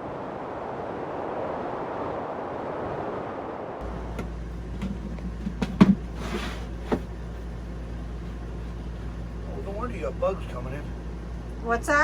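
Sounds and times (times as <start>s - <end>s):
steady background noise: 0.0s - 12.0s
low hum: 3.8s - 12.0s
knocks and clicks from handling: 4.1s - 6.2s.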